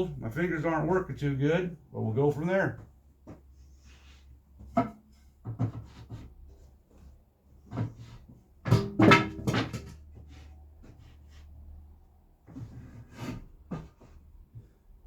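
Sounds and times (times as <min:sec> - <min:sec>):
wood and tools knocking: 0:04.6 - 0:06.3, 0:08.7 - 0:10.4.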